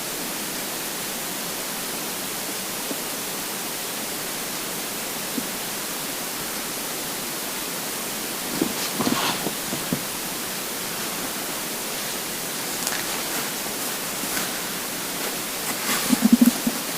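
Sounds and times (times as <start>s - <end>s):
steady hiss: 0.0s - 16.9s
stomach gurgles: 15.8s - 16.9s.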